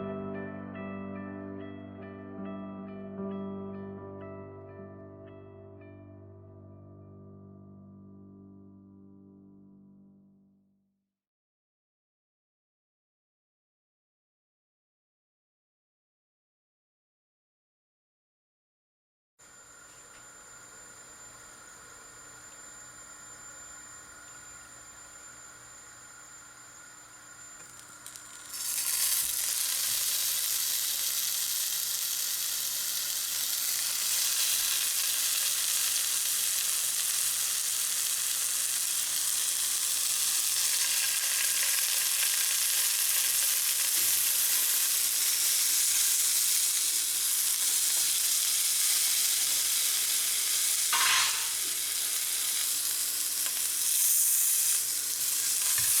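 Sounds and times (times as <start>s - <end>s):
food sizzling in a frying pan: 27.6s - 56.0s.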